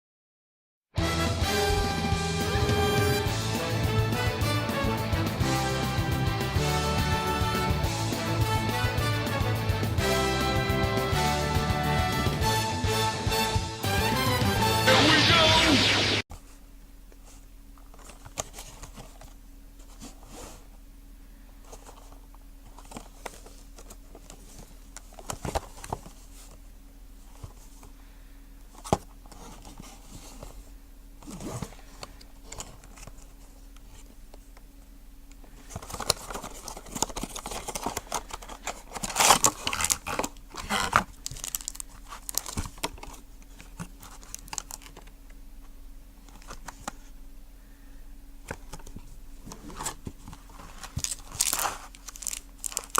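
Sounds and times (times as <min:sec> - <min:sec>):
steady low hum: 0:16.3 - 0:52.9
packaging crinkling and tearing: 0:35.5 - 0:45.1, 0:49.6 - 0:52.9.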